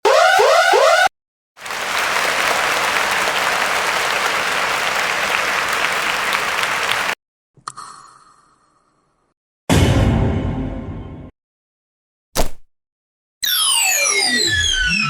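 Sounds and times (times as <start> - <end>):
crowd clapping: 1.6 - 7.2.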